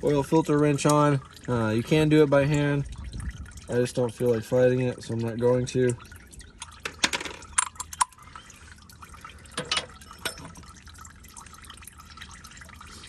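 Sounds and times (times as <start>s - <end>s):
oil dripping into pan: 0.0s - 13.0s.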